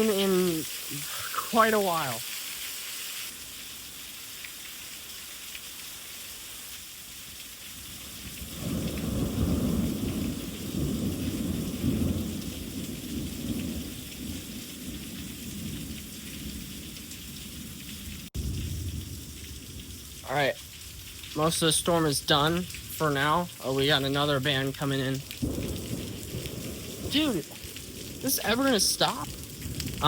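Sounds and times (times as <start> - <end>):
heavy rain hissing: 0.0 - 4.2, 6.6 - 30.0
rolling thunder: 8.4 - 20.0, 25.2 - 30.0.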